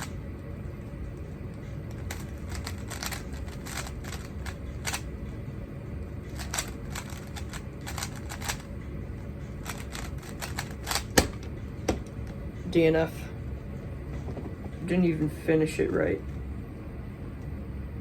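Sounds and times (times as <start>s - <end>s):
plastic slap: 10.8s - 12.1s.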